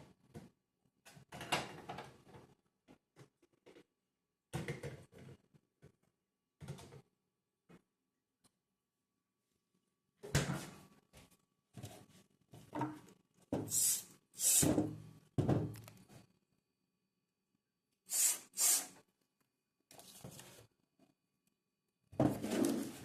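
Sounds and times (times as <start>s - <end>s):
short hissing bursts: 13.7s - 14.7s, 18.1s - 19.0s.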